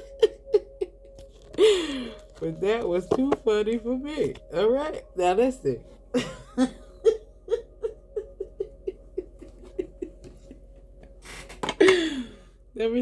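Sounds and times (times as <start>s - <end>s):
woman laughing softly: 0.0s - 2.4s, 6.2s - 12.4s.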